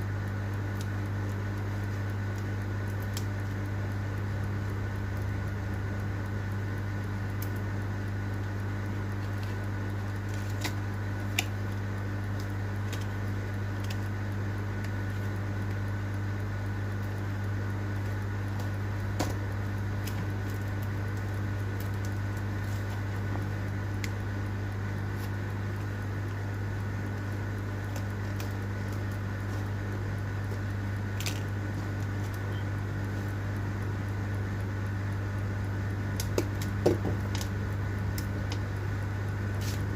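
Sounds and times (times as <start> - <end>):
low electrical hum: 0.0 - 39.9
faint high whine: 14.3 - 34.2.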